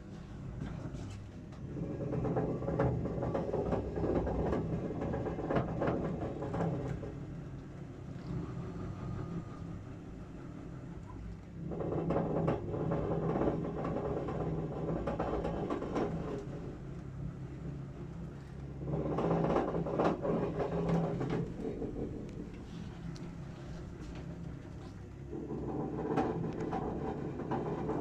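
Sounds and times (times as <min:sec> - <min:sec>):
gas boiler humming: 0:06.0 - 0:28.0.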